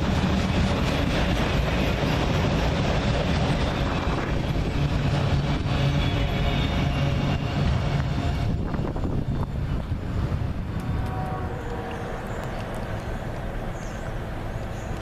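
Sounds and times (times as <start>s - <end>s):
train rumble and rail noise: 0.0s - 15.0s
low engine hum: 7.5s - 15.0s.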